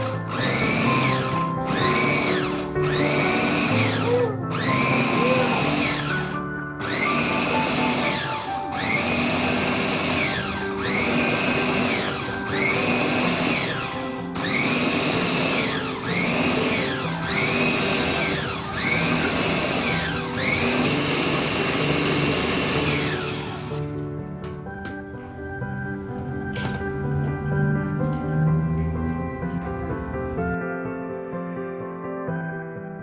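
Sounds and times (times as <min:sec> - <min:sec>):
electric blender motor whining: 0:00.0 - 0:24.3.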